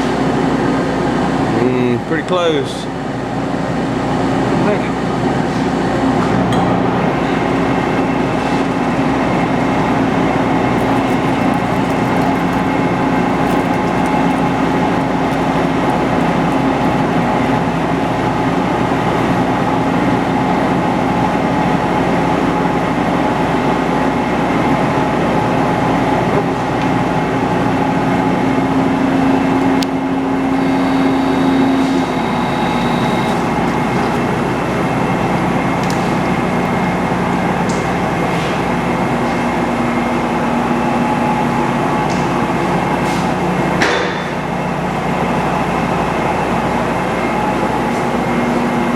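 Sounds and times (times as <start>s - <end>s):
metal lathe whirring: 10.5s - 23.2s, 30.2s - 43.7s
steady hum: 10.6s - 22.7s.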